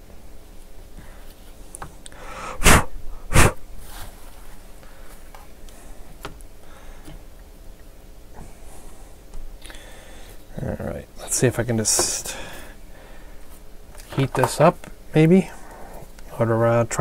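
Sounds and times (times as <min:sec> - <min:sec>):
breath puffs: 0:02.1 - 0:03.6.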